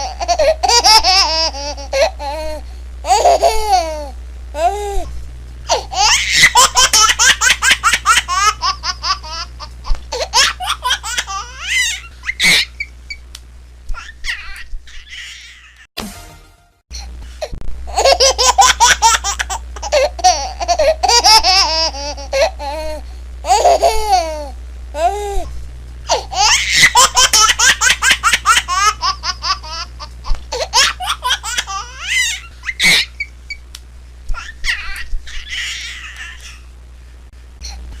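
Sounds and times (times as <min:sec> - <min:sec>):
baby laughing: 0:00.0 - 0:04.7, 0:05.7 - 0:12.9, 0:17.9 - 0:25.2, 0:26.1 - 0:33.3, 0:34.3 - 0:36.7
low steady hum: 0:00.0 - 0:38.0.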